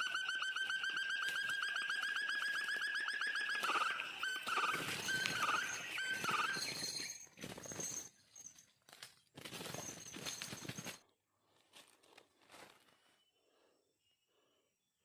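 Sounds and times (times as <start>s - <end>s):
rustling and crunching: 7.2s - 11.0s, 11.6s - 13.0s.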